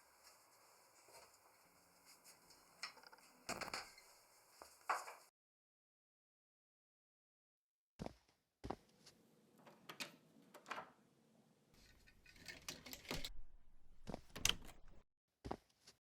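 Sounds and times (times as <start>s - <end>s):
sharp knocks clicks and rattles: 11.8s - 15.0s.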